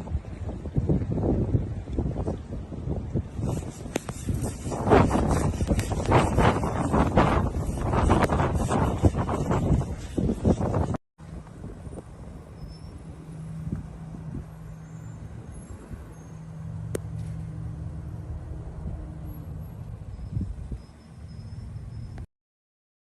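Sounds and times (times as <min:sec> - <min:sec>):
vehicle engine humming: 0:03.8 - 0:21.9.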